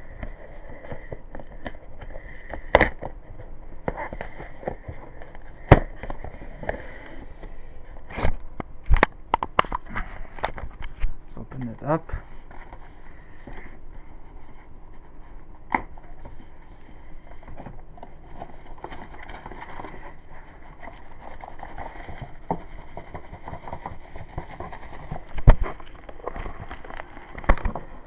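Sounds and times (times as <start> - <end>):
cardboard box rustling: 11.6 - 28.0.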